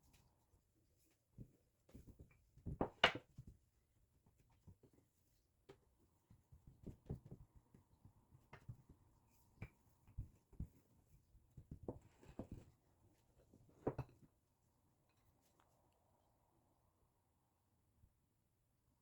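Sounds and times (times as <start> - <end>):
food preparation knocks and clicks: 2.0 - 3.5.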